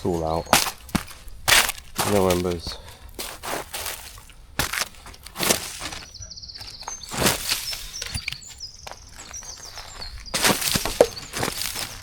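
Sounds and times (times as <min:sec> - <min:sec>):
footsteps on dry leaves: 0:00.0 - 0:12.0
songbird chirping: 0:00.0 - 0:12.0.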